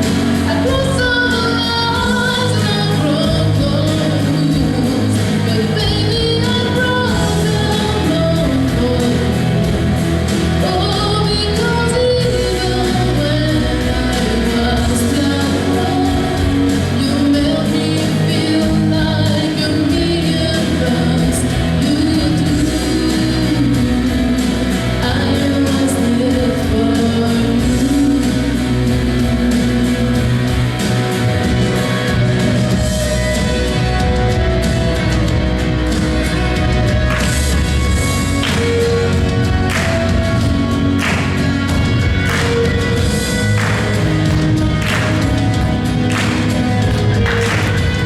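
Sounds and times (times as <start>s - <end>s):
woman singing: 0.0s - 30.5s
instrumental accompaniment: 26.0s - 48.0s.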